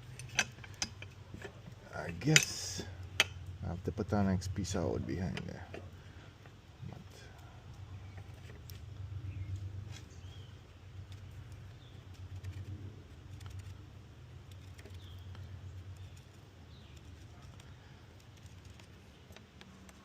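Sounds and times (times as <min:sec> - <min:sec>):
low wavering rumble: 0:02.8 - 0:17.0
bird chirps: 0:14.8 - 0:17.1.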